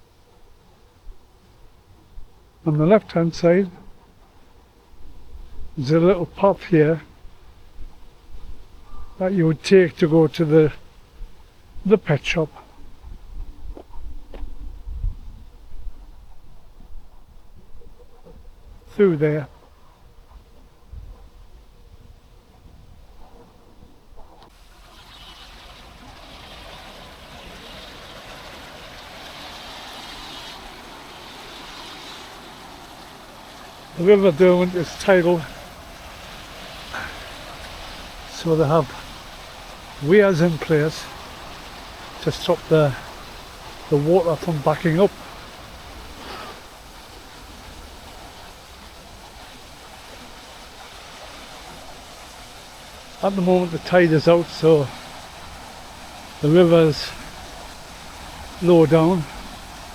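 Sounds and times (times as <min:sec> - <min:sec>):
rushing river water: 0:24.5 - 0:59.9.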